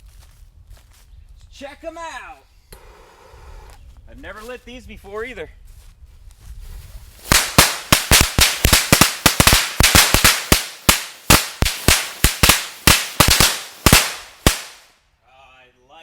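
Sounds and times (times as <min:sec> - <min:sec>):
firecrackers banging: 0:07.2 - 0:14.9.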